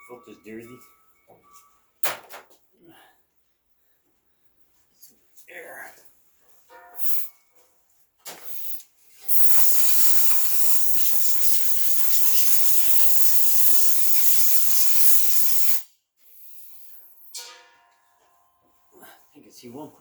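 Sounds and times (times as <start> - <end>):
compressed air hissing: 7.0 - 7.3, 8.4 - 16.9.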